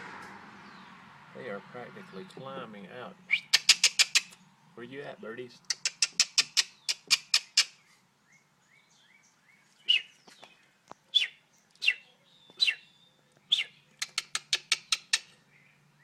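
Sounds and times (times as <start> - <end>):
birds chirping: 0.6 - 16.0
sharp clicking: 3.5 - 4.4, 5.6 - 7.7, 14.0 - 15.3.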